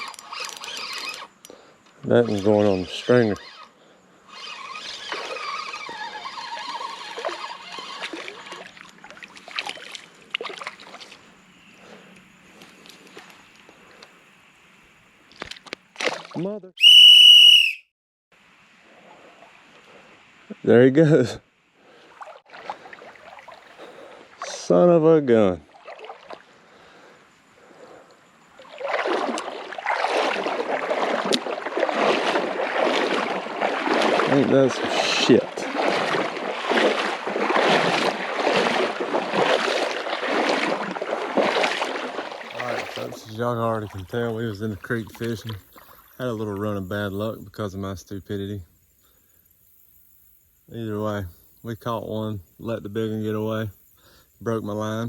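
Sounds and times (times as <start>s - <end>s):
creek water splashing and trickling: 0.0s - 14.2s, 15.2s - 16.6s, 18.8s - 20.2s, 21.7s - 47.1s
fish splashing at surface: 28.6s - 43.1s.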